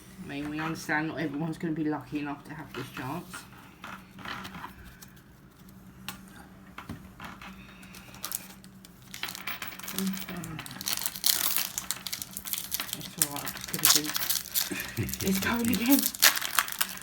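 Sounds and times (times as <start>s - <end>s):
foil wrapper crinkling: 8.0s - 17.0s.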